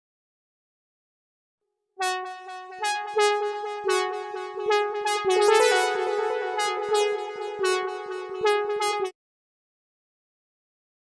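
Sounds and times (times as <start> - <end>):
buzzy synthesizer lead melody: 2.0 - 9.1.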